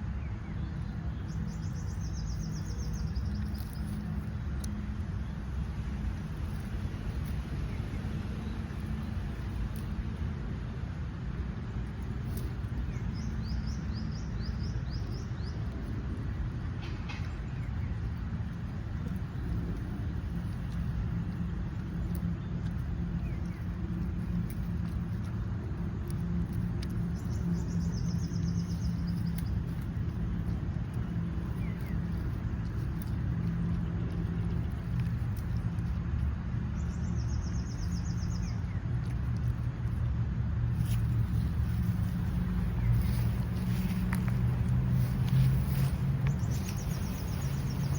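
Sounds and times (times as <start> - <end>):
low outdoor rumble: 0.0 - 47.9
small bird chirping: 26.0 - 35.9, 36.6 - 39.7, 40.7 - 47.9.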